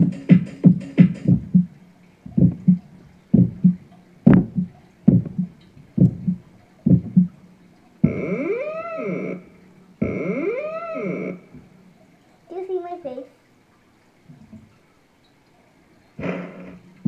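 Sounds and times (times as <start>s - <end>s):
electronic keyboard low thumps: 0.0s - 7.4s, 8.0s - 11.9s, 16.2s - 17.0s
synthesizer tone swooping in pitch: 8.0s - 11.5s.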